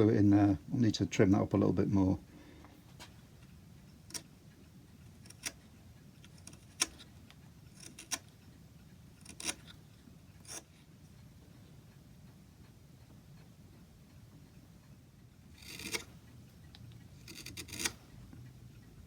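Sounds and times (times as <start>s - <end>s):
hand tools clicking and snipping: 6.2s - 7.1s, 7.7s - 8.2s, 9.2s - 9.8s, 15.6s - 16.2s, 17.2s - 18.0s.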